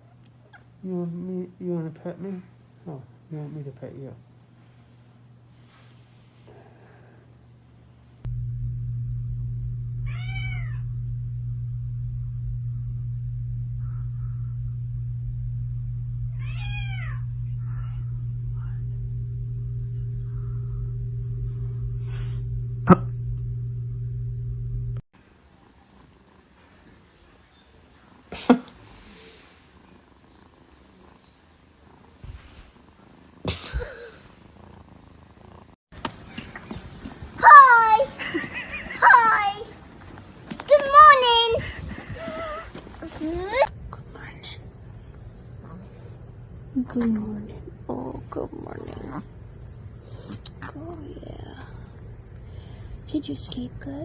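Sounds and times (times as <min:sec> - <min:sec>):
steady low hum: 0:02.0 - 0:25.0
cat purring: 0:08.2 - 0:35.8
cat meowing: 0:10.0 - 0:10.9, 0:16.4 - 0:17.3.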